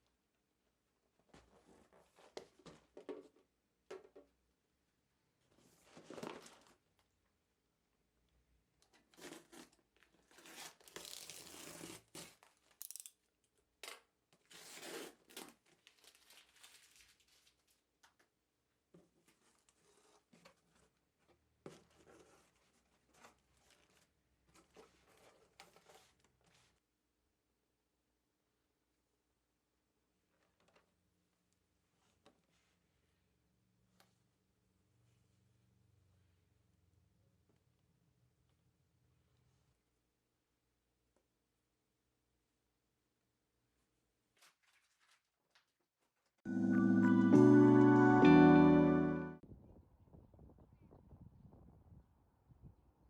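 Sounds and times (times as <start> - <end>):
paper or plastic rustling: 14.5 - 17.9, 21.8 - 26.8, 44.3 - 46.3.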